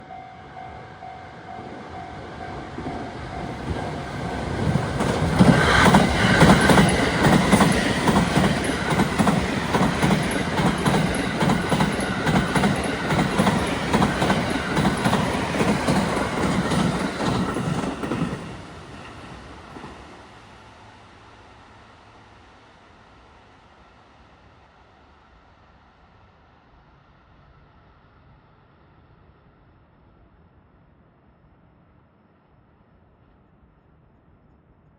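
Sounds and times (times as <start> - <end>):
electric train passing: 0.0 - 21.9
wheels clacking over rail joints: 3.4 - 19.9.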